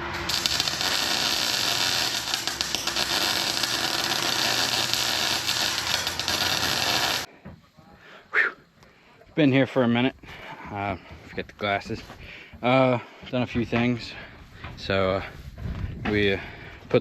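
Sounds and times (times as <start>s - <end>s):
combine harvester running: 0.0s - 7.3s.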